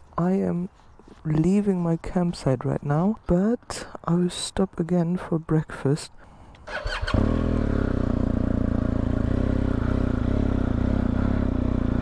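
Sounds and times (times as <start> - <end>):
motorcycle engine running: 6.7 - 12.0.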